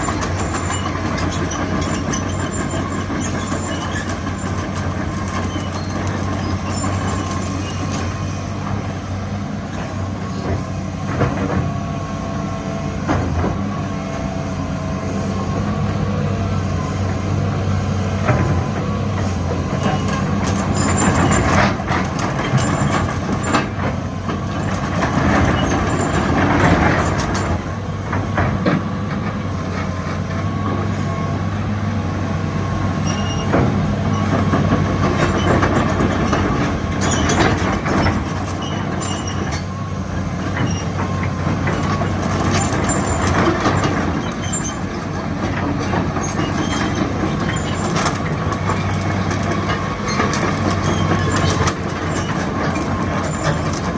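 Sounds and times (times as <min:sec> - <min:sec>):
machine squealing: 0:00.0 - 0:08.5, 0:19.2 - 0:23.6, 0:24.5 - 0:27.5, 0:33.0 - 0:34.5, 0:35.1 - 0:39.7, 0:40.4 - 0:53.9
excavator diesel engine humming: 0:00.0 - 0:53.9.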